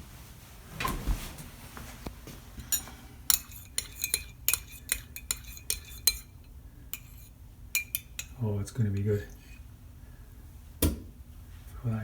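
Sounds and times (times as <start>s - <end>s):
teaspoon clinking in mug: 2.7s - 9.6s.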